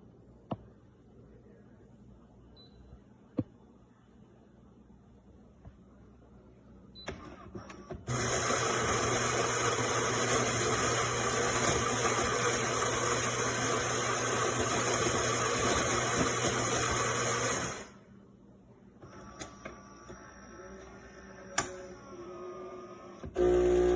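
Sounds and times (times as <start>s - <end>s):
espresso machine whirring: 8.1s - 18.0s, 23.3s - 23.9s.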